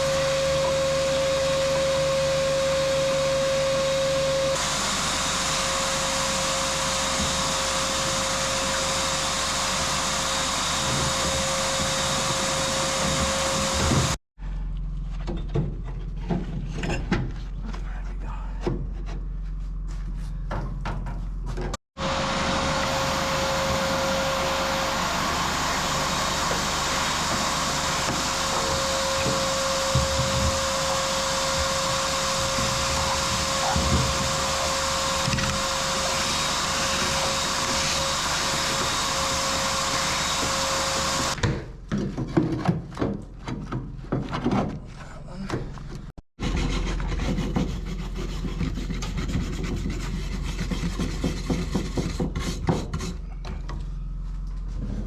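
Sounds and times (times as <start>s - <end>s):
power tool whining: 0.0s - 14.2s, 22.0s - 41.4s
knocks and scrapes: 15.0s - 21.8s, 41.4s - 53.8s.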